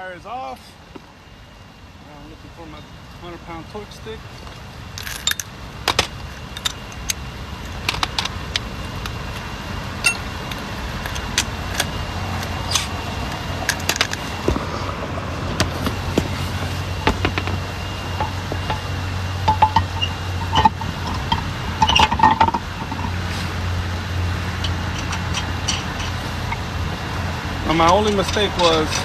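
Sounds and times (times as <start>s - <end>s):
low vehicle rumble: 0.0s - 29.0s
hand tools clinking and rattling: 4.3s - 14.3s, 15.7s - 23.5s, 24.6s - 26.6s, 27.6s - 29.0s.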